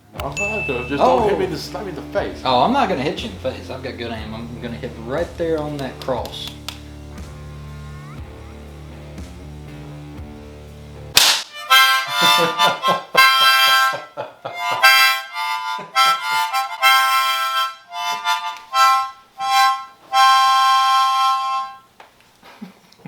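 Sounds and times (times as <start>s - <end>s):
harmonica chords blown hard: 0.4s - 5.2s, 11.5s - 21.9s.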